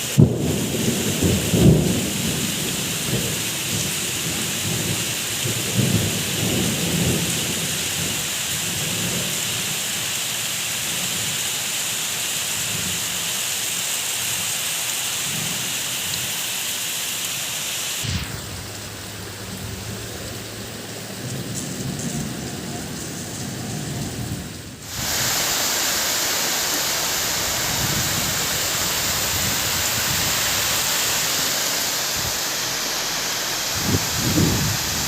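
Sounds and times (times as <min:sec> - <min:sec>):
heavy rain: 0:00.0 - 0:35.0
thunder rolling: 0:00.2 - 0:07.4, 0:18.0 - 0:35.0.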